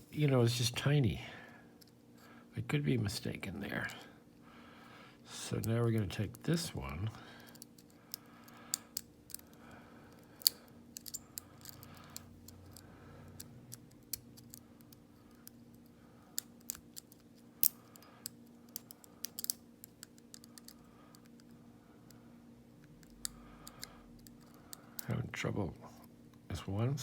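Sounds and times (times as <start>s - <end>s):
lock pick clicking in padlock: 10.4s - 12.2s, 16.4s - 21.2s.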